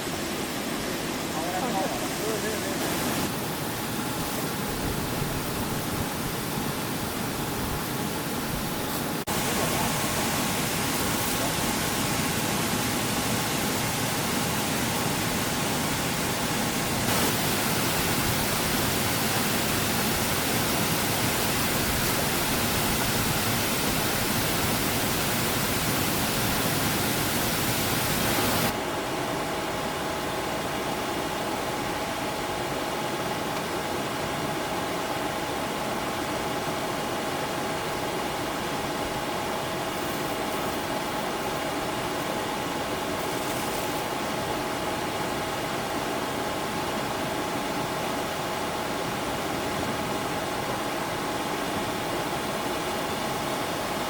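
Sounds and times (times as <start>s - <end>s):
churning aerated water: 9.2s - 28.8s.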